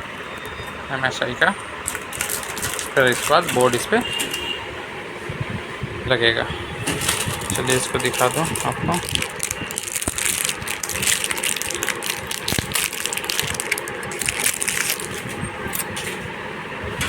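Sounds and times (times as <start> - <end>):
thin metal and plastic crackling: 1.8 - 4.6, 6.8 - 16.3.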